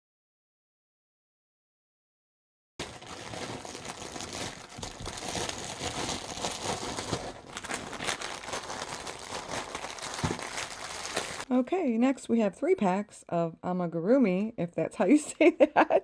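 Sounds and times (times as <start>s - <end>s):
packaging crinkling: 2.8s - 11.5s.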